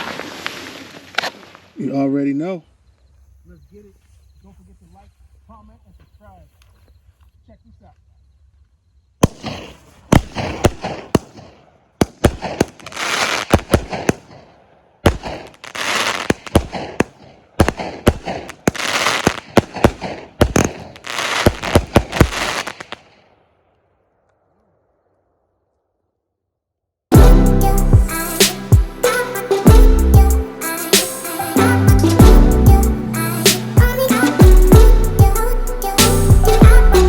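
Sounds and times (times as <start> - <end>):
firework hiss: 0.0 - 1.8, 15.3 - 17.0, 18.5 - 23.0, 27.5 - 29.6, 30.4 - 31.8, 33.0 - 34.4
firework cake firing shots: 9.2 - 23.2.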